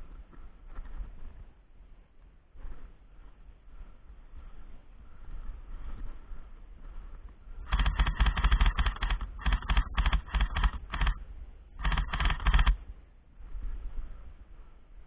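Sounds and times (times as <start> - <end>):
airsoft gun firing in bursts: 7.7 - 11.2, 11.8 - 12.8.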